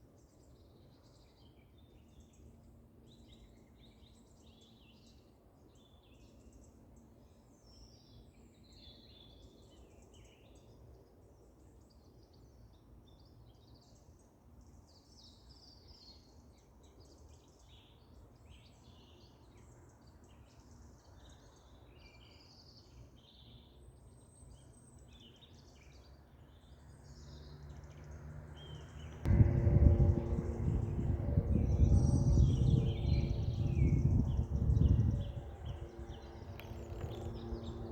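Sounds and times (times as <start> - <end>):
songbirds chirping: 25.2 - 37.9
low background rumble: 28.8 - 37.9.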